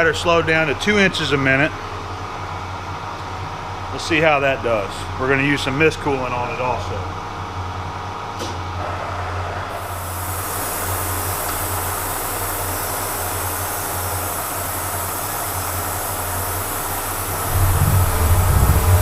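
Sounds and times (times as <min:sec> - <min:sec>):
milling machine humming: 0:08.6 - 0:19.0
coolant sprayer hissing: 0:08.8 - 0:19.0.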